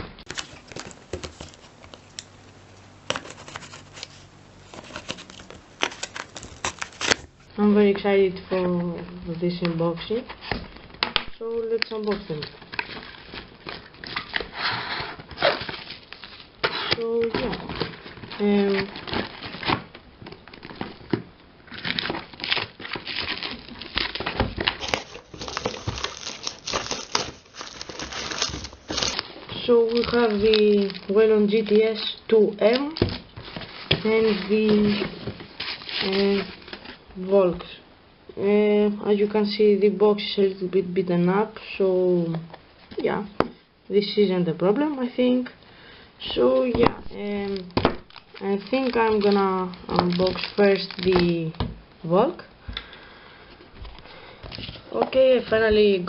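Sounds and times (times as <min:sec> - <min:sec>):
packaging handled by hand: 0:00.0 - 0:07.5, 0:10.2 - 0:37.1, 0:46.7 - 0:51.8.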